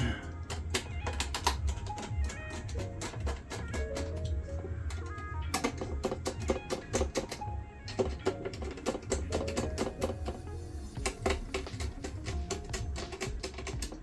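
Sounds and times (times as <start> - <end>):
music with beat and bass: 0.0 - 14.0.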